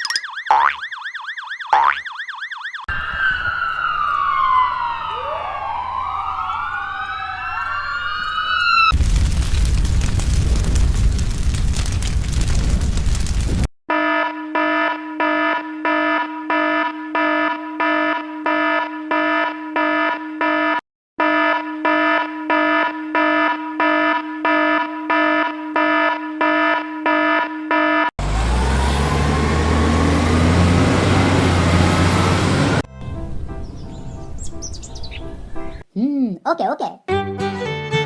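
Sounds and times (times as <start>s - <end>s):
electronic alarm beeping: 0.0s - 2.9s
loud rushing noise: 29.1s - 32.8s
low rumble: 30.3s - 33.4s
birds chirping: 33.5s - 35.9s.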